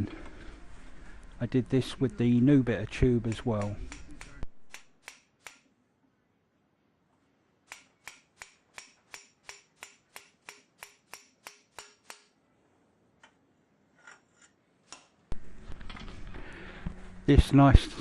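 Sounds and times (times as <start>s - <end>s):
hammer tapping steel tubing: 3.2s - 5.7s, 7.7s - 12.4s.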